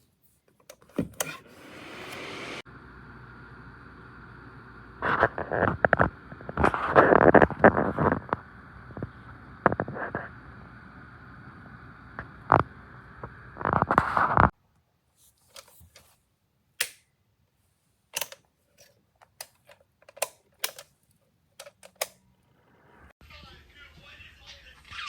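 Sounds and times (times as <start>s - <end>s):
space heater fan blowing: 1.0s - 14.5s
sharp clicks and taps of handling: 18.2s - 22.2s.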